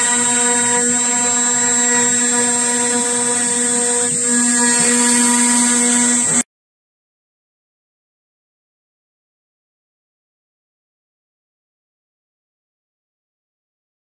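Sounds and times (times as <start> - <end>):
milling machine spindle whine: 0.0 - 6.4.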